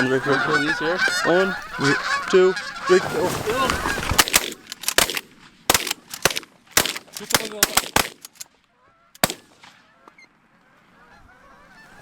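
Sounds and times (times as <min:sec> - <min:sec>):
geese honking: 0:00.0 - 0:04.9, 0:05.8 - 0:12.0
shotgun blasts: 0:04.1 - 0:08.4, 0:09.2 - 0:09.8.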